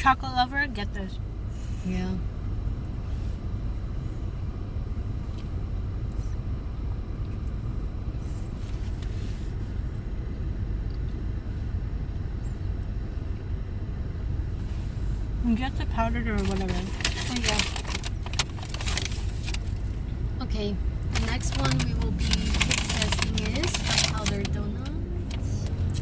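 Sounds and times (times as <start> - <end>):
car idling heard from cabin: 0.0 - 26.0
faint rustles: 8.1 - 10.1, 16.3 - 20.3, 21.0 - 26.0.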